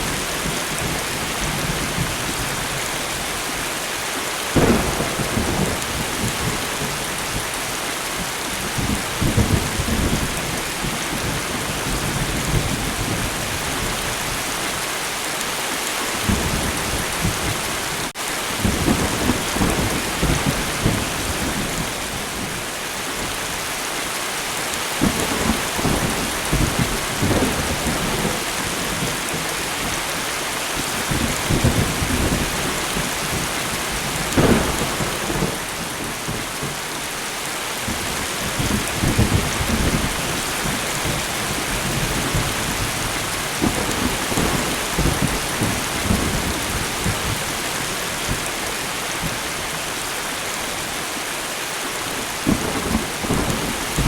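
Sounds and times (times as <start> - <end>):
steady rain hiss: 0.0 - 54.0
thunder rumbling: 4.6 - 7.5, 30.8 - 36.8, 37.8 - 47.6.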